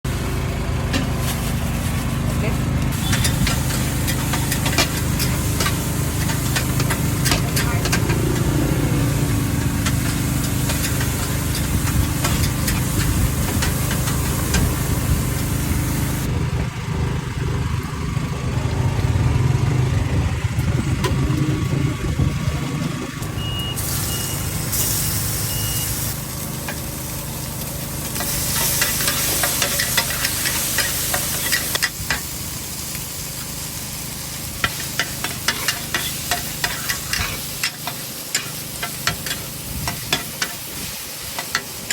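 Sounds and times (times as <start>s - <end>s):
food sizzling in a wok: 0.1s - 16.3s, 23.3s - 41.9s
low rumble: 7.7s - 23.6s
short high beeps: 23.4s - 24.5s, 25.4s - 26.0s
metal spatula clattering on pan: 34.6s - 40.6s.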